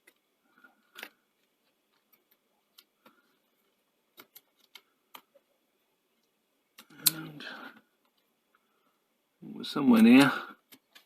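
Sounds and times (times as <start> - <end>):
faint clicks of plastic parts: 0.0 - 9.0, 10.2 - 11.0.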